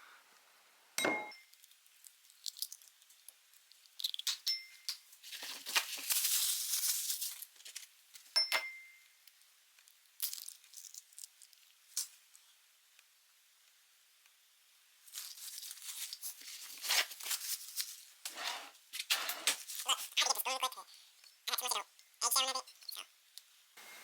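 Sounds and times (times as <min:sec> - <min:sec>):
glass bowl clinking: 0:01.0 - 0:01.5, 0:08.4 - 0:09.0
crinkling: 0:01.5 - 0:08.3, 0:09.7 - 0:12.6, 0:15.0 - 0:21.4.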